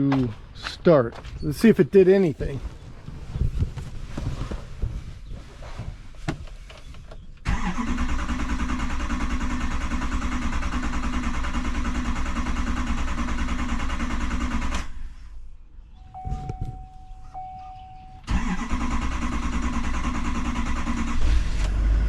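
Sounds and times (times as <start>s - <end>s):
diesel engine starter cranking: 7.4s - 15.2s, 16.0s - 22.0s.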